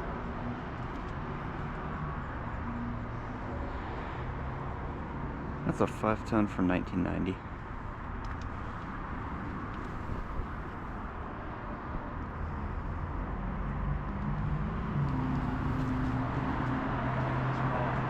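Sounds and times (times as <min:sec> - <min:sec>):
road traffic noise: 0:00.0 - 0:18.0
vehicle engine humming: 0:05.8 - 0:18.0.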